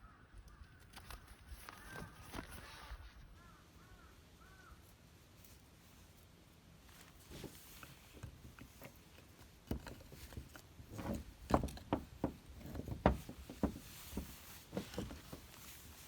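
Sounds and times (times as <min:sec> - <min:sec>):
hard objects knocking and clattering: 0:09.6 - 0:15.7.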